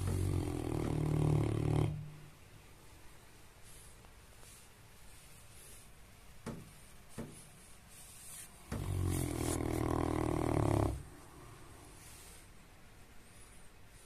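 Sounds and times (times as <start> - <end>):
dog snoring: 0.0 - 2.2, 8.7 - 11.2.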